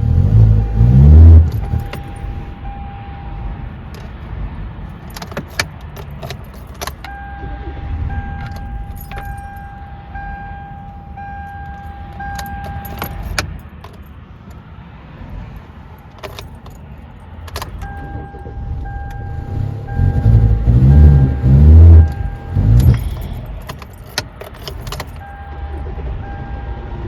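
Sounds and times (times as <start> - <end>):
highway traffic rumble: 0.0 - 27.0
key and ignition clicks: 0.1 - 2.5, 5.0 - 7.3, 8.3 - 9.8, 10.8 - 14.6, 16.1 - 25.8
dashboard warning chime dinging: 0.1 - 3.2, 5.1 - 13.6, 17.5 - 26.9.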